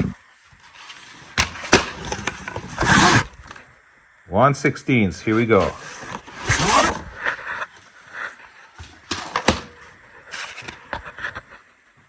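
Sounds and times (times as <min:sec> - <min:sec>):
rods rustling and scraping in package: 0:00.6 - 0:03.6, 0:05.3 - 0:07.9, 0:08.8 - 0:11.1.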